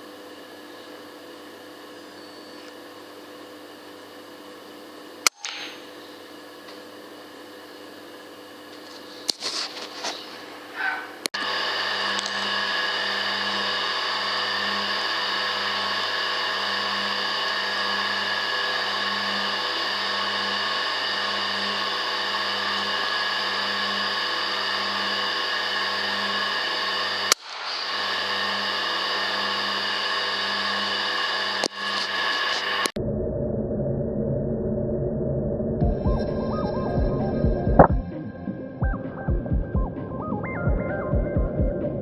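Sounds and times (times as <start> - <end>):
steady electronic whine: 0.0 - 42.0
sharp click: 5.2 - 5.8
pulsing low hum: 32.9 - 42.0.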